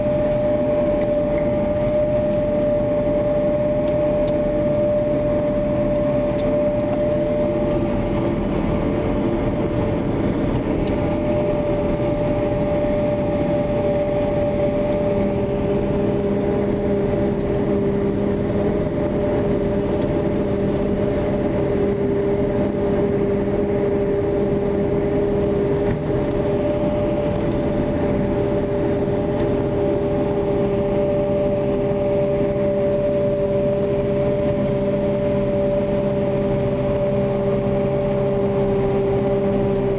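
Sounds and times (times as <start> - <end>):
engine drone: 0.0 - 39.9
harvester high whine: 0.0 - 39.9.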